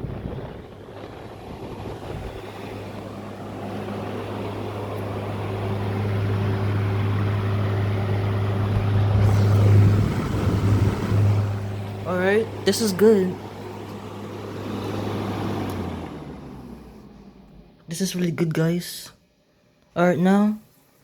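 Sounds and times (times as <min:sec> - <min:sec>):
air conditioner fan running: 0:00.0 - 0:21.0
rushing air: 0:08.3 - 0:12.6.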